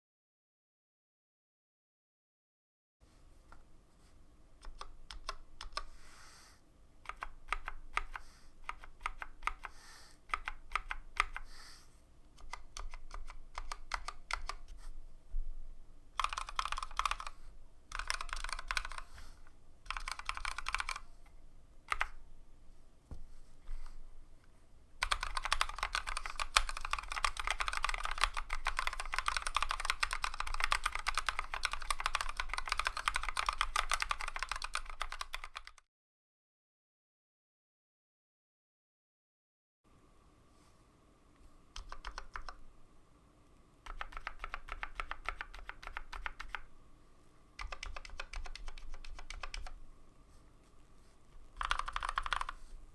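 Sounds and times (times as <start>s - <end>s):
typing on mechanical keyboard: 4.6s - 5.9s, 7.0s - 11.5s, 12.4s - 14.7s, 16.2s - 19.2s, 19.8s - 21.1s, 21.9s - 22.2s, 25.0s - 35.8s, 41.8s - 42.6s, 43.8s - 46.7s, 47.6s - 49.8s, 51.6s - 52.6s.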